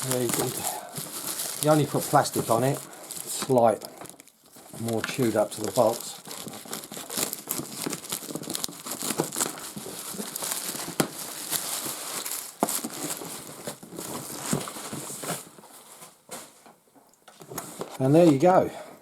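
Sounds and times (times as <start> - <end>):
plastic wrapping crinkling: 0.0 - 16.6.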